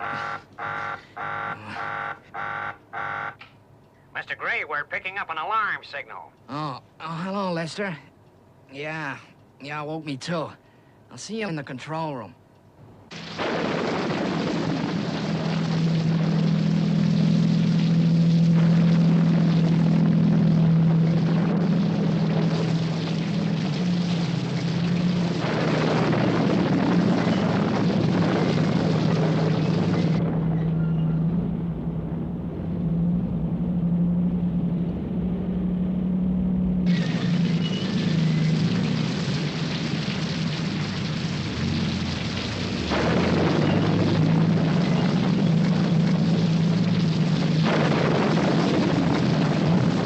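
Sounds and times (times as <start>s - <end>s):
heavy vehicle engine droning: 15.2s - 50.0s.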